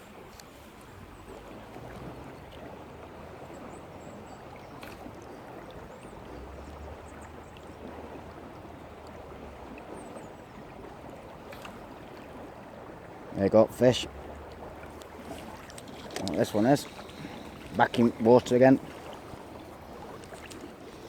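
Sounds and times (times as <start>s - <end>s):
river water rushing: 10.6s - 21.0s.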